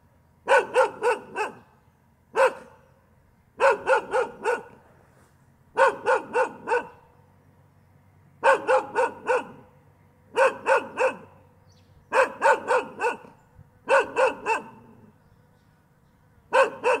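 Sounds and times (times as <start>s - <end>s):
dog barking in quick bursts: 0.4s - 1.7s, 2.3s - 2.8s, 3.6s - 4.8s, 5.7s - 7.0s, 8.4s - 9.7s, 10.3s - 11.4s, 12.1s - 15.1s, 16.5s - 17.0s.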